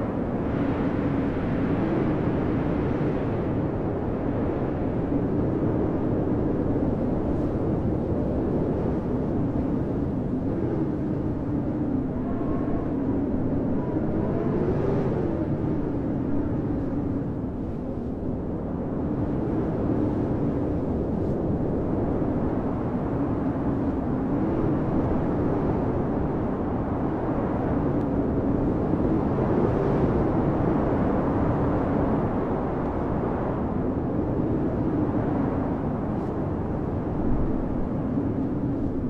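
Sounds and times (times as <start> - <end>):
muffled blizzard wind howling: 0.0 - 39.0.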